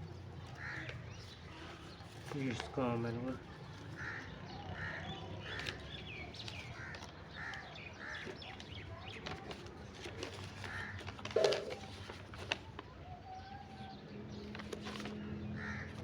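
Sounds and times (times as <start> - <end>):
crows cawing: 0.5 - 0.9, 4.0 - 5.6, 6.8 - 8.3, 10.6 - 11.9, 15.6 - 16.0
handling clicks and rustles: 8.3 - 12.8.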